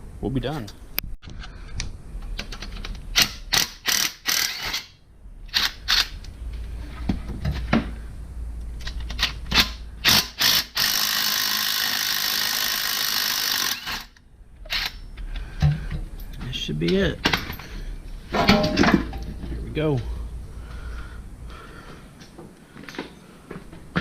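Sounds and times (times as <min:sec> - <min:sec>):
hand ratchet clicking: 0:02.6 - 0:04.9
metal tools knocking: 0:18.3 - 0:19.6.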